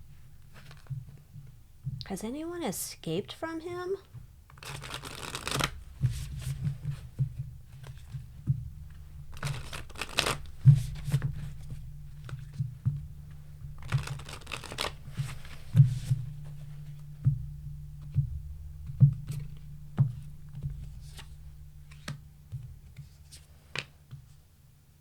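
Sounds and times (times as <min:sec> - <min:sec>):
cards shuffling: 0:04.5 - 0:06.8, 0:09.3 - 0:12.6, 0:13.8 - 0:16.2, 0:23.3 - 0:23.9
soft knocks: 0:05.8 - 0:24.4.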